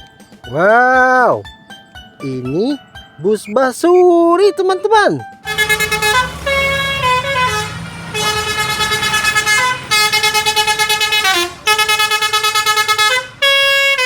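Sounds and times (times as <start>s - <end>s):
musical bus horn melody: 5.4s - 14.0s.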